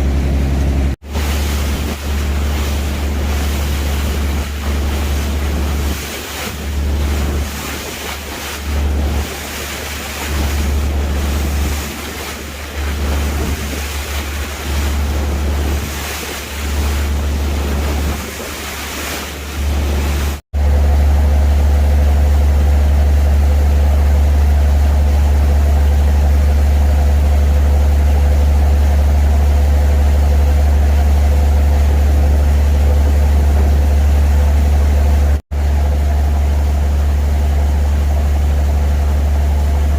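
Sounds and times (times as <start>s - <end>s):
sea waves: 0.0s - 20.4s
engine drone: 0.0s - 39.9s
wind buffeting microphone: 0.8s - 20.4s.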